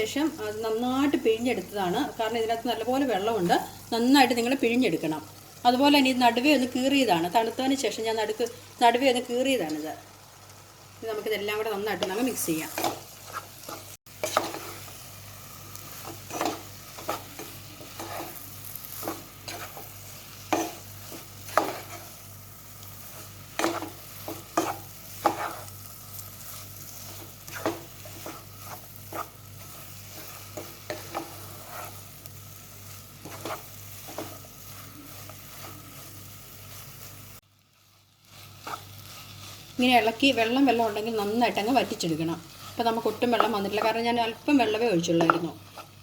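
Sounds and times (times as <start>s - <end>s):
low sizzle: 0.0s - 46.0s
spoon scraping a pan: 11.9s - 37.2s, 38.3s - 39.7s, 45.0s - 46.0s.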